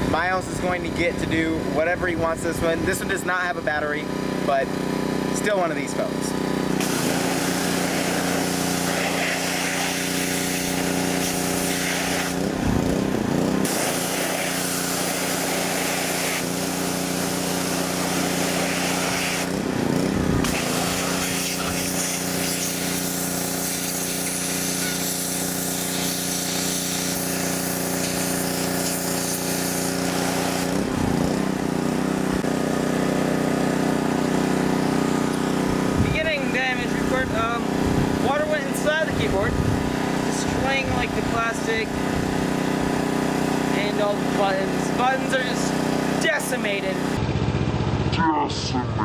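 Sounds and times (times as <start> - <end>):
pressure washer motor hum: 0.0 - 47.8
water jet hissing: 6.5 - 12.6, 13.6 - 19.6, 20.4 - 30.7.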